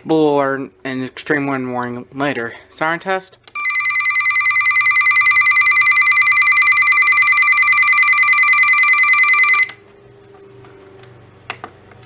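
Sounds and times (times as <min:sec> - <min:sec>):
pulsing electronic siren trill: 0:03.6 - 0:09.8.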